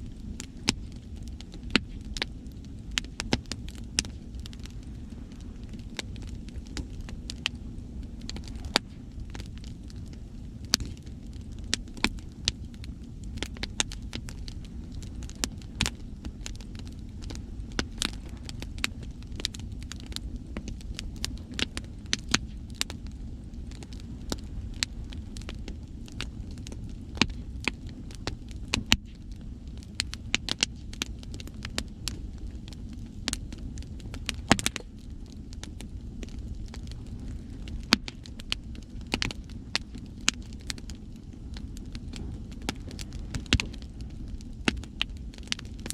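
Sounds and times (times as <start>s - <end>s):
campfire crackling and popping: 0.0s - 45.9s
sea surf rumble: 4.0s - 11.6s.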